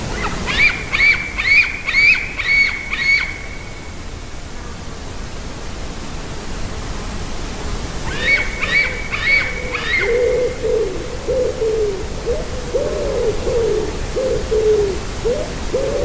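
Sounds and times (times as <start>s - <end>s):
bird calling ringing notes: 0.1s - 3.8s, 8.1s - 16.0s.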